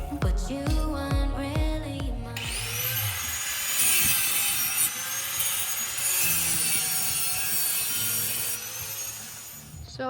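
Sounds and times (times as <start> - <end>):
power tool cutting whine: 2.4 - 10.0.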